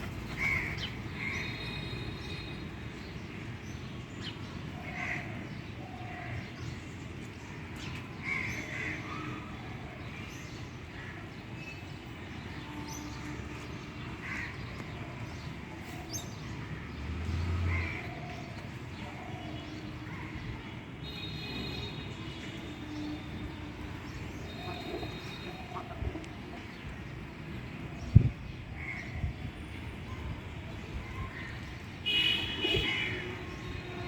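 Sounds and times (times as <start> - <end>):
crows cawing: 0.4 - 1.5.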